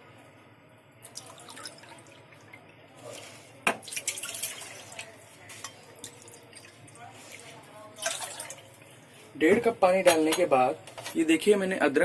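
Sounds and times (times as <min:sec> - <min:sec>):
water pouring into pan: 0:01.0 - 0:08.8.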